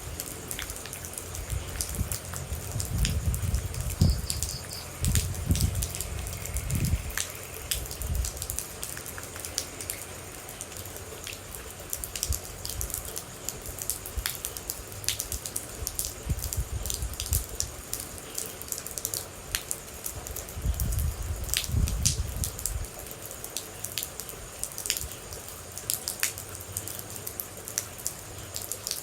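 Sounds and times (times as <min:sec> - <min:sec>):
low rumbles: 0:00.0 - 0:09.6
rain falling: 0:00.0 - 0:29.0
water droplets ticking: 0:00.1 - 0:16.2.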